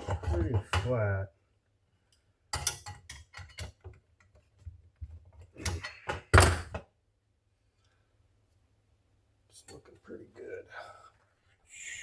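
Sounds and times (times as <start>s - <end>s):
metal parts knocking on workbench: 5.6s - 6.8s.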